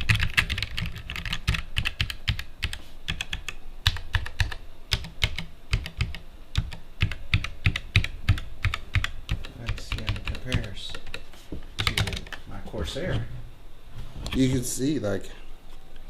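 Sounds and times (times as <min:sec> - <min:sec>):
mechanical keyboard typing: 0:00.0 - 0:11.2, 0:11.8 - 0:12.4.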